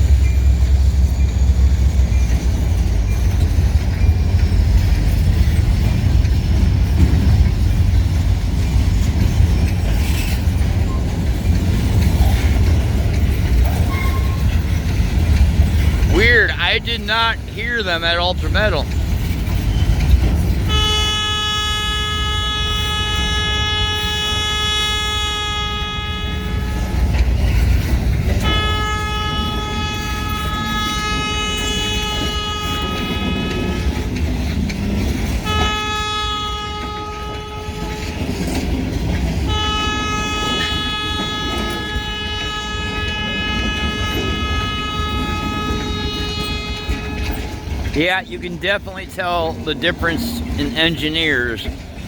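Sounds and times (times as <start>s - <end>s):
low rumble of passing train: 0.0s - 52.0s
locomotive air horn blasts: 15.8s - 18.8s, 20.6s - 51.7s.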